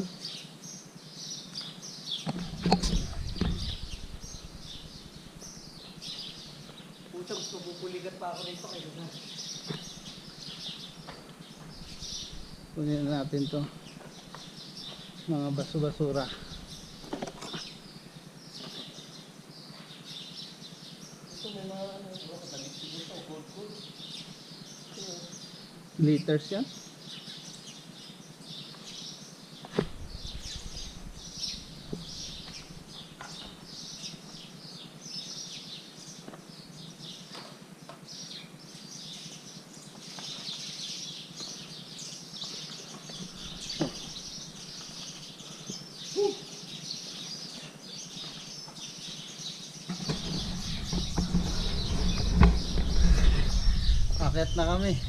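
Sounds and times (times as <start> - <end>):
small birds chirping: 0.0 - 55.0
low rumble: 2.3 - 6.0, 29.9 - 32.9, 50.2 - 55.0.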